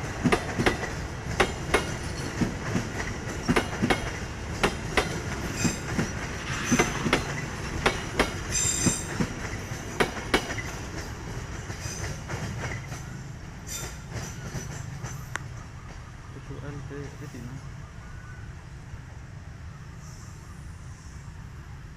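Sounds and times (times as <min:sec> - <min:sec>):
train wheels clacking over rail joints: 0:00.0 - 0:16.0
high wheel squeal: 0:08.5 - 0:09.1.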